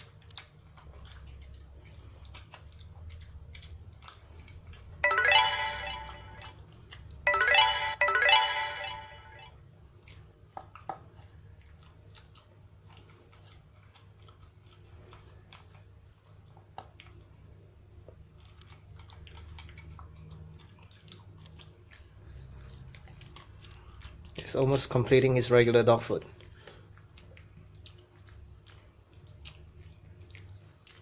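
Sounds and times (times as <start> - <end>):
dog chewing crunchy food: 0.0 - 5.0, 9.9 - 31.0
music: 5.0 - 6.5, 7.3 - 9.5.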